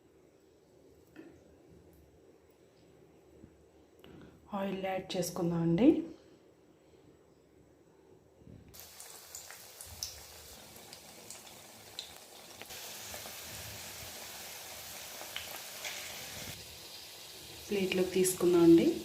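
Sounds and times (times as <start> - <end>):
deep-frying sizzle with pops: 8.7 - 19.0.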